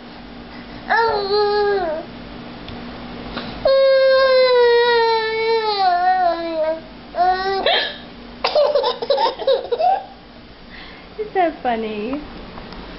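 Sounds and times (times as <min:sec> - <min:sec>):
baby laughing: 0:07.4 - 0:10.2.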